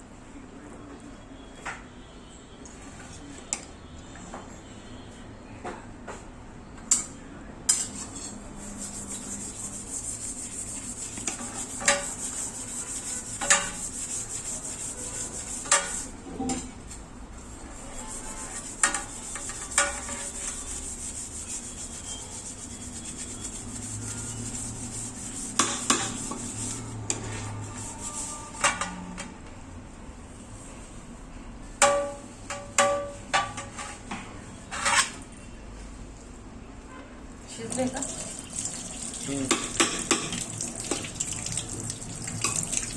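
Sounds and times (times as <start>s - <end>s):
spoon stirring and scraping pot: 6.9s - 16.8s, 17.4s - 29.0s, 34.7s - 35.2s, 39.4s - 41.2s.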